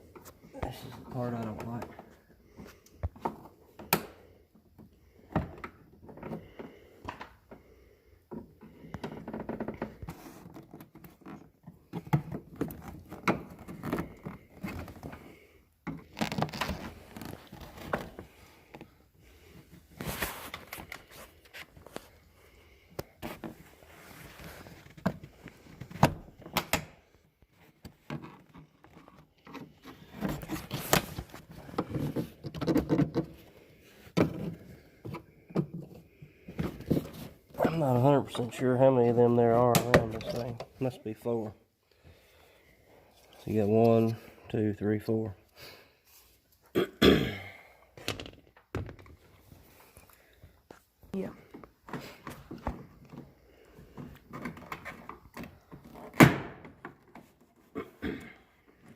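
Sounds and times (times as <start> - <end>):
pry bar knocking and scraping plastic: 31.6 - 33.4.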